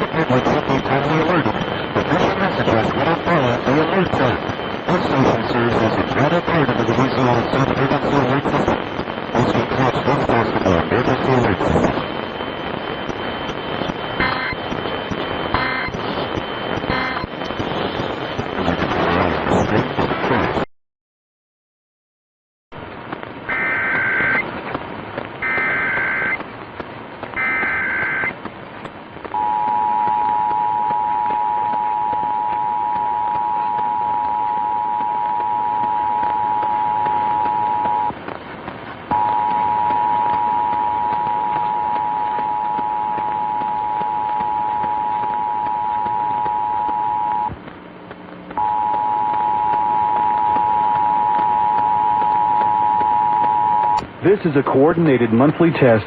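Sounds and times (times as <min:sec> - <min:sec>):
data header bursts: 0:00.0 - 0:20.6, 0:23.5 - 0:24.6, 0:25.4 - 0:26.4, 0:27.4 - 0:28.4, 0:29.3 - 0:38.3, 0:39.1 - 0:47.6, 0:48.6 - 0:55.2
radio static hiss: 0:00.0 - 0:20.7, 0:22.7 - 0:56.0
two-tone attention signal: 0:14.2 - 0:14.7, 0:15.5 - 0:17.4, 0:23.5 - 0:24.4, 0:25.4 - 0:26.4, 0:27.4 - 0:28.4, 0:29.4 - 0:38.2, 0:39.1 - 0:47.6, 0:48.6 - 0:54.0.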